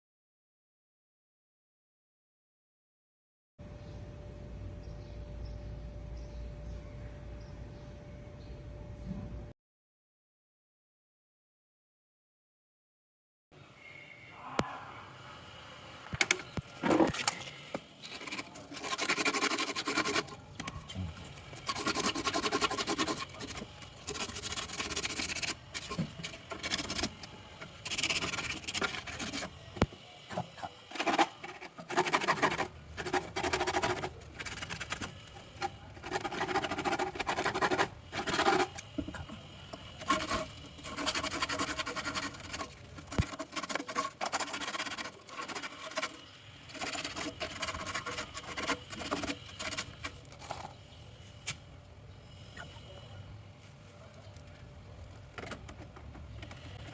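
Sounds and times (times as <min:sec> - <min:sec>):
scraping and rubbing: 0:16.2 - 0:51.7.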